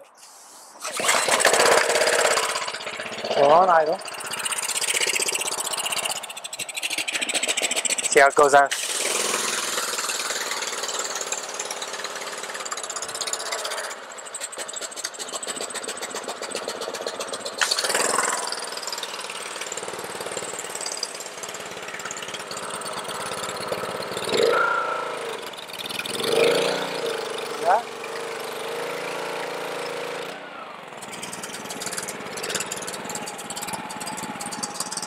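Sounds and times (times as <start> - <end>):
steady hiss: 0.1 - 0.8
pressure washer engine running: 0.8 - 35.0.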